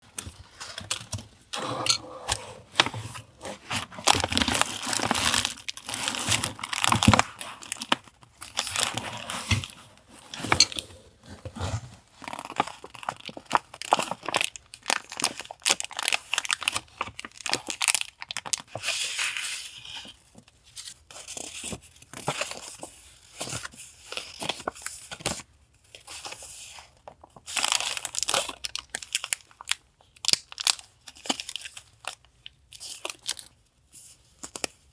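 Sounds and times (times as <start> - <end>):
paper crinkling and rustling: 0.1 - 34.9.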